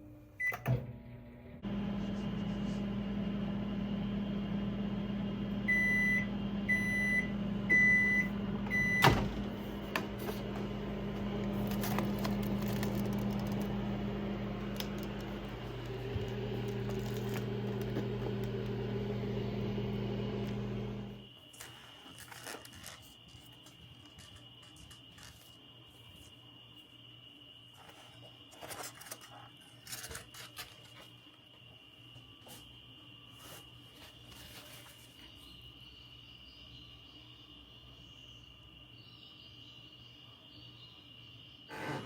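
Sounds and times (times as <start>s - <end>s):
microwave oven humming: 0.0s - 21.4s
buzzer beeps: 5.7s - 9.2s.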